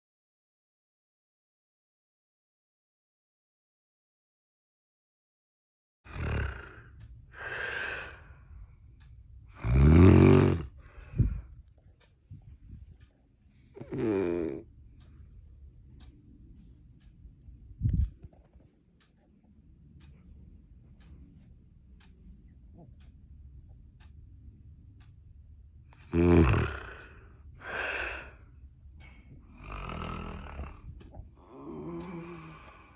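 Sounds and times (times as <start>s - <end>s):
short snort: 6.1s - 7.7s, 26.0s - 28.4s
woman snoring: 6.1s - 8.2s, 9.6s - 10.8s, 13.7s - 14.6s, 26.0s - 28.4s, 29.5s - 32.9s
breathy hissing breath: 6.1s - 8.9s, 9.5s - 11.6s, 26.0s - 28.6s, 29.4s - 32.9s.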